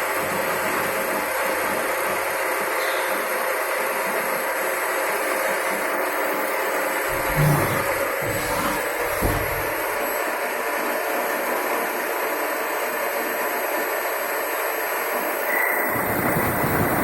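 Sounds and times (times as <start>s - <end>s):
low knock: 7.1s - 10.0s.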